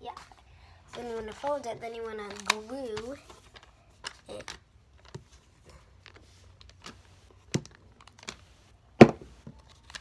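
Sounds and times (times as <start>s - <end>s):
paper rustling: 0.1s - 10.0s
sharp knocks on tabletop: 9.0s - 9.3s.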